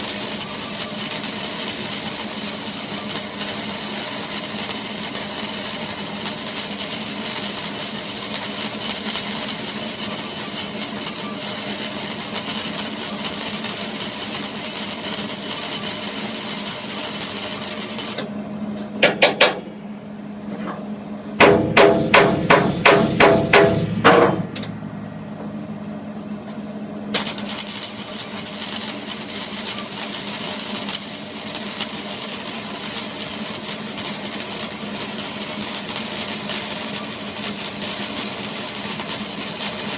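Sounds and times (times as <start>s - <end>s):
low mechanical hum: 0.0s - 39.9s
hammer striking metal: 19.0s - 19.7s, 21.4s - 24.7s.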